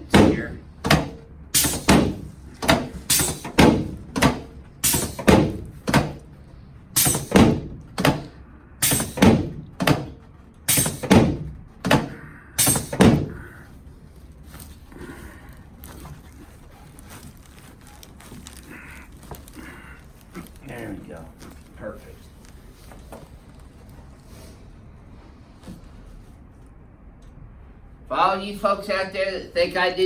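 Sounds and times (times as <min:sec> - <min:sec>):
sharp ringing thumps: 0:07.0 - 0:08.2, 0:08.8 - 0:10.1, 0:10.7 - 0:13.4.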